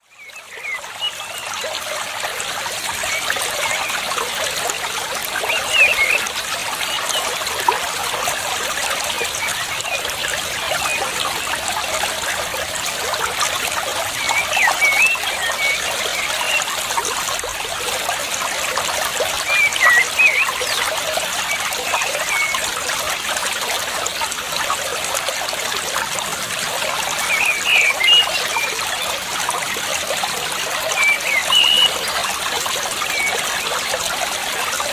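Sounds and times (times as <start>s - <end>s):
water trickling: 0.1s - 34.9s
bird chirps: 31.0s - 32.0s.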